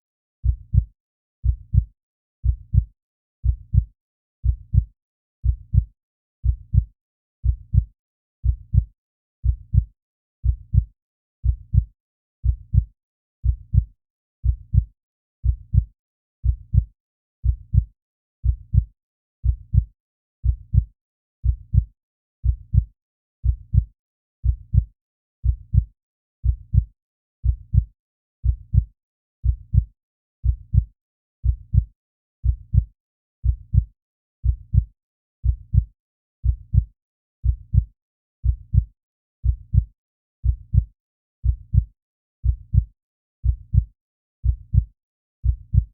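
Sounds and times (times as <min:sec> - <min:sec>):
heartbeat double thump: 0:38.7 - 0:40.9, 0:41.7 - 0:45.9.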